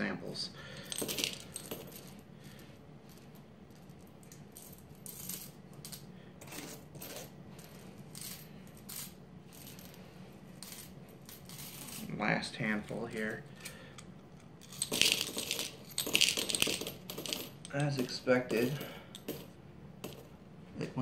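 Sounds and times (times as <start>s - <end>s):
coins clinking into glass jar: 0.8s - 2.2s, 3.7s - 10.0s, 10.6s - 12.2s, 14.6s - 20.3s.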